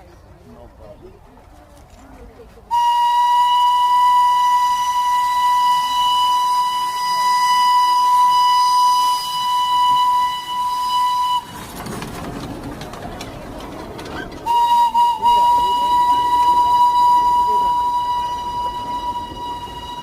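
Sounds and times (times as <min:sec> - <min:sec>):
train running noise: 0:00.0 - 0:20.0
steam locomotive whistle: 0:02.7 - 0:11.8, 0:14.4 - 0:20.0
clicks and knocks: 0:11.5 - 0:14.8.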